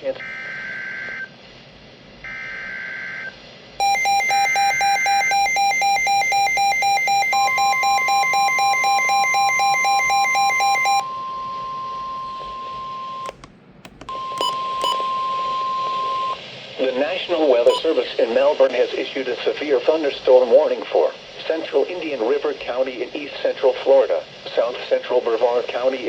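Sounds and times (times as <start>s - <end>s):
pulsing electronic alarm beep: 3.8s - 13.3s, 17.7s - 18.0s
short beeps: 3.8s - 13.4s, 14.1s - 16.4s, 17.7s - 18.0s
steady warning tone: 3.8s - 16.4s
clicks: 13.2s - 15.2s.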